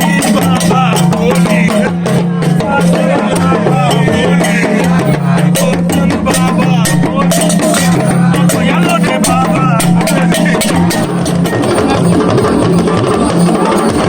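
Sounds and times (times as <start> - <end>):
music with drums and bass: 0.0 - 14.0
singing voices: 0.0 - 14.0.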